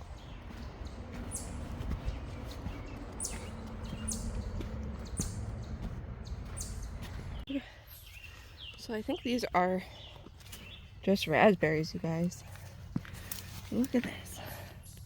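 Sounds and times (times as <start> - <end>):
low rumble: 0.0 - 7.5.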